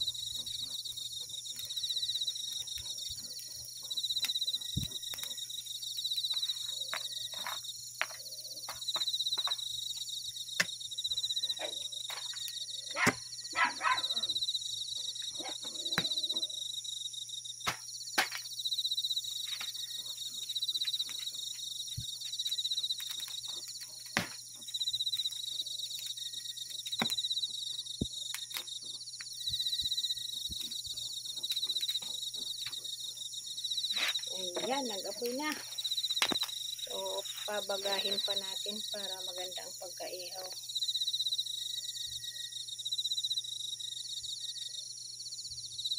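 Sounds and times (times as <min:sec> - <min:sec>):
crickets trilling: 0:00.0 - 0:45.9
dog barking: 0:12.9 - 0:14.4.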